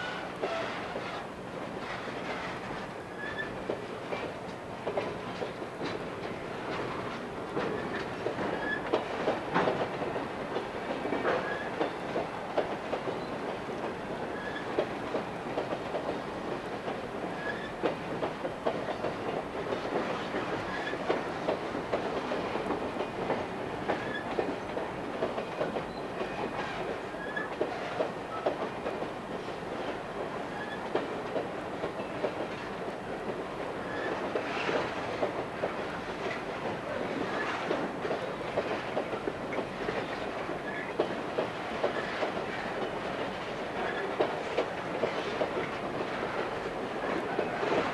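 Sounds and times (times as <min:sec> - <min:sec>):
faint short squeak: 0:00.0 - 0:03.6, 0:14.3 - 0:14.7, 0:25.9 - 0:28.1, 0:30.5 - 0:30.8
train wheels clattering over rails: 0:00.0 - 0:47.9.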